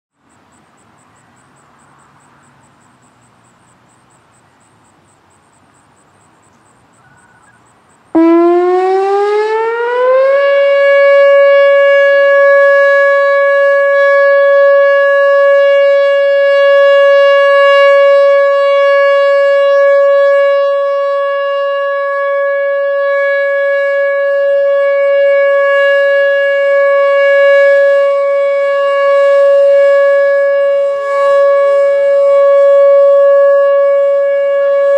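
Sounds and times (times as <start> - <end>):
warning siren winding up: 8.2 - 34.9.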